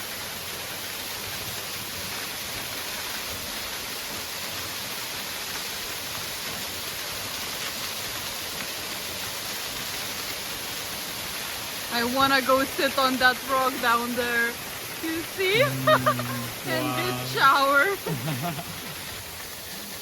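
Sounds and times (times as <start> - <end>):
waterfall pouring into pool: 0.0 - 20.0.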